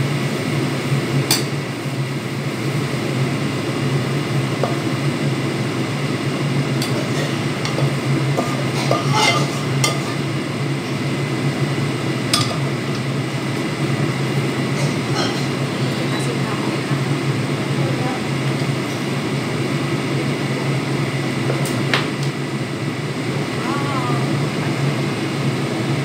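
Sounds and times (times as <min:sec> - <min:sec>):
steady low hum: 0:00.0 - 0:26.0
utensil scraping cooking pan: 0:06.7 - 0:10.3, 0:14.7 - 0:15.6.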